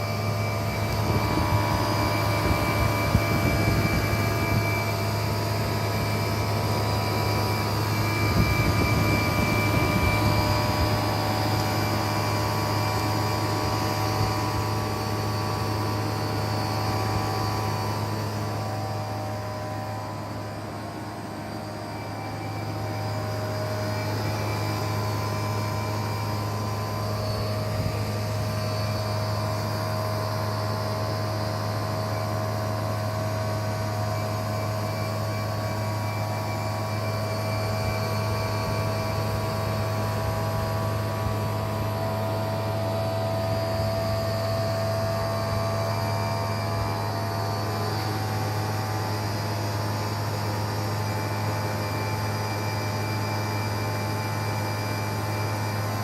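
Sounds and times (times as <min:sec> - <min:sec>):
engine compartment low hum: 0:00.0 - 0:56.0
steady whine: 0:00.0 - 0:56.0.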